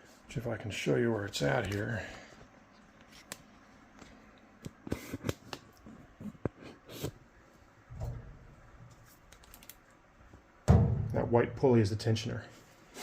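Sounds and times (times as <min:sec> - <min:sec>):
hands handling parts: 0:07.9 - 0:11.2
dull low thump: 0:10.7 - 0:11.3.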